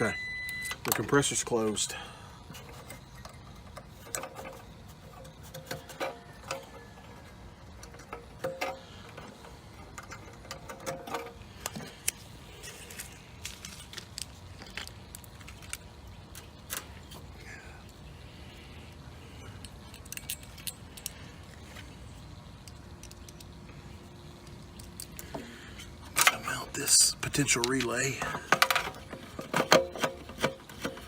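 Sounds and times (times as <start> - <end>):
low background noise: 0.0 - 31.0
hand tools clicking and rattling: 0.8 - 17.3, 19.3 - 21.9, 24.5 - 31.0.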